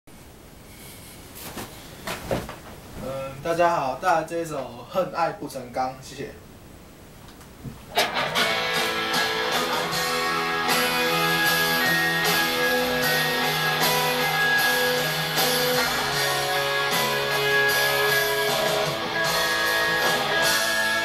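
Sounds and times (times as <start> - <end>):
guitar strumming chords: 7.9 - 21.0.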